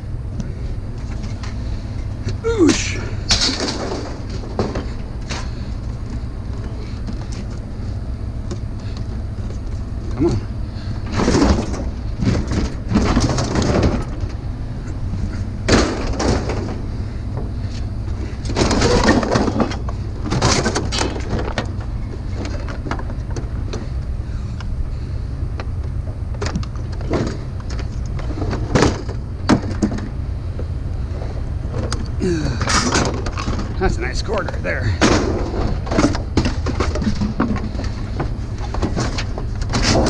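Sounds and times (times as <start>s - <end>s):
steady low rumble: 0.0s - 40.0s
metal parts clanking and scraping: 2.8s - 7.6s, 10.8s - 23.9s, 26.4s - 30.2s, 31.2s - 40.0s.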